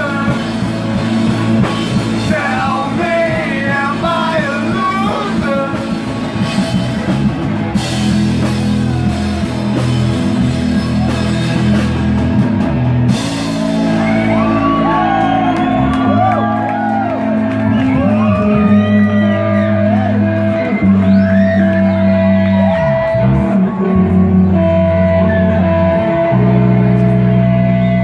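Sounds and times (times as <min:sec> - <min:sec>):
person singing: 0:00.0 - 0:01.1, 0:01.8 - 0:06.5
rock band playing: 0:00.0 - 0:28.0.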